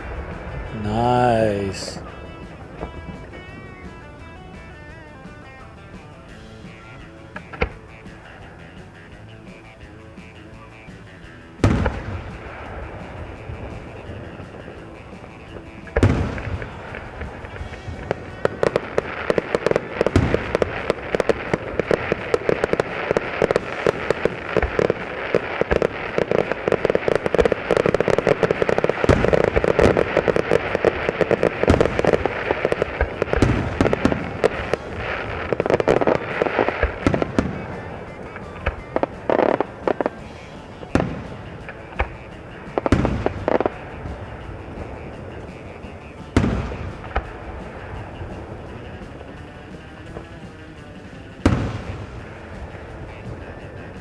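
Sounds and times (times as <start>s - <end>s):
fireworks booms: 0.0s - 6.6s, 11.6s - 54.0s
fireworks bangs and crackles: 0.0s - 54.0s.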